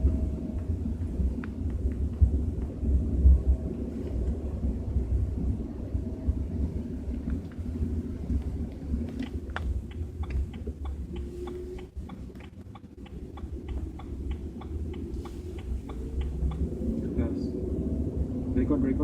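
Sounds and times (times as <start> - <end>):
car cabin rumble: 0.0 - 17.4
turn signal clicking: 8.3 - 16.8.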